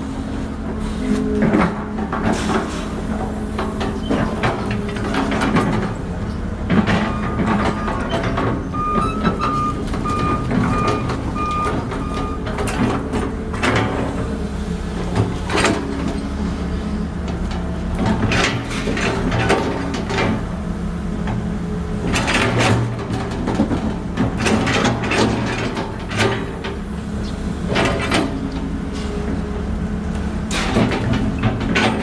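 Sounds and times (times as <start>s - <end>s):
diesel engine running: 0.0s - 32.0s
machinery clanking and knocking: 0.2s - 32.0s
reversing alarm beeping: 7.0s - 12.8s.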